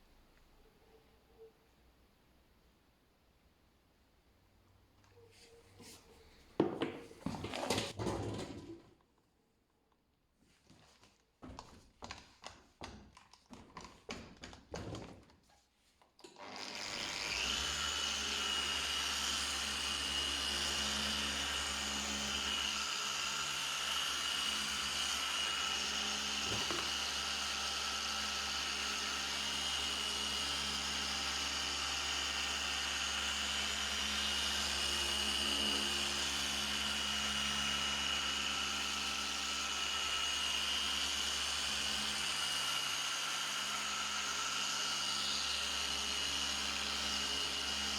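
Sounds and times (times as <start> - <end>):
electric power tool whining: 16.2 - 47.9.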